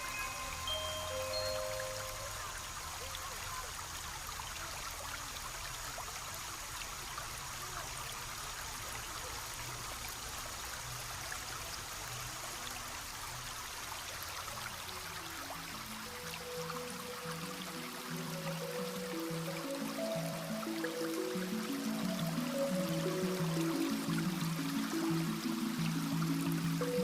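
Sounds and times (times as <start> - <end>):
stream trickling: 0.0 - 27.0.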